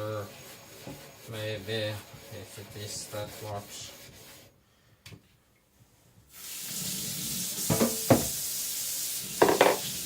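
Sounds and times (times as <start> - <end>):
water running from a tap: 6.3 - 10.0
hard knocks against sink: 7.7 - 8.4, 9.4 - 9.8.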